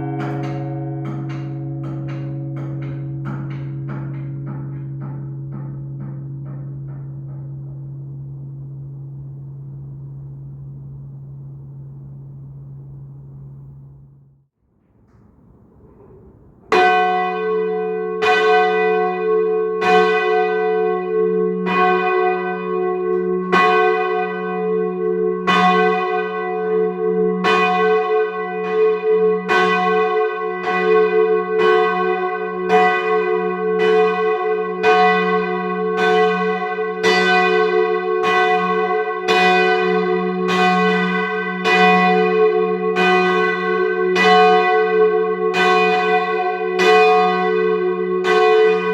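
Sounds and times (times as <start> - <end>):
heavy church bell ringing: 0.0 - 14.2, 16.7 - 48.9
low hum: 3.8 - 14.4.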